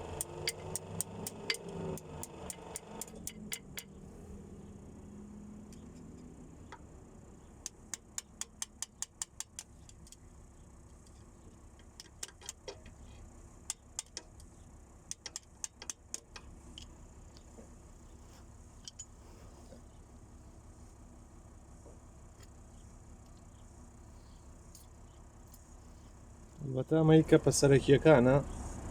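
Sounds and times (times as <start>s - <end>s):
metallic clicks from hand tools: 0.2s - 3.9s, 7.6s - 10.2s, 10.9s - 13.0s, 13.7s - 14.5s, 15.1s - 16.9s.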